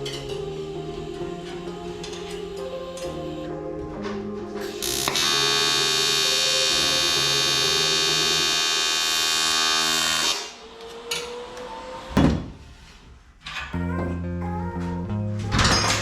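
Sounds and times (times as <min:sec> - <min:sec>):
welding arc buzzing: 0:04.7 - 0:11.0.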